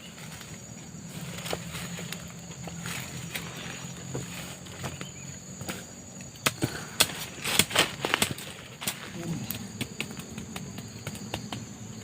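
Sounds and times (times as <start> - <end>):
high insect drone: 0.0 - 12.0
sharp knocks and clicks: 6.4 - 11.7.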